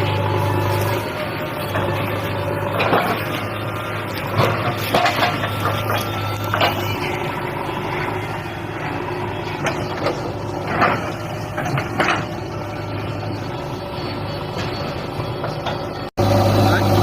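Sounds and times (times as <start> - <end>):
diesel machinery engine running: 0.0 - 17.0.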